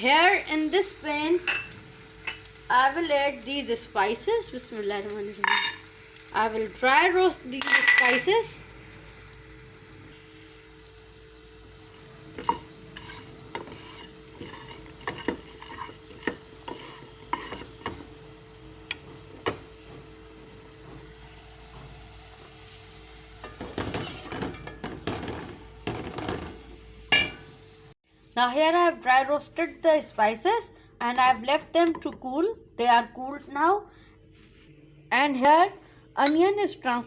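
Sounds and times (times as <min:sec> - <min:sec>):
spices roasting in a pan: 0:00.0 - 0:37.0
spoon stirring and scraping: 0:12.4 - 0:18.1, 0:22.8 - 0:25.3.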